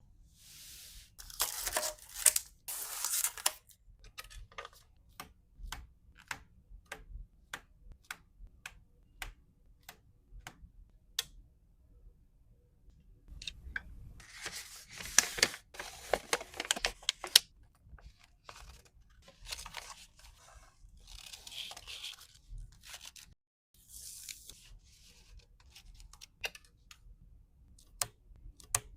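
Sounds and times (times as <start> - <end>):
packaging crinkling and tearing: 1.2 - 3.6, 14.2 - 17.4.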